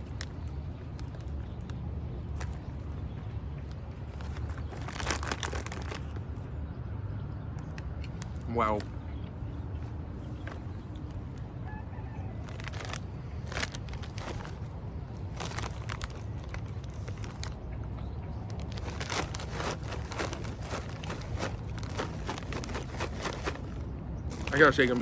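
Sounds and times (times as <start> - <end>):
chewing crunchy food: 12.5 - 24.6.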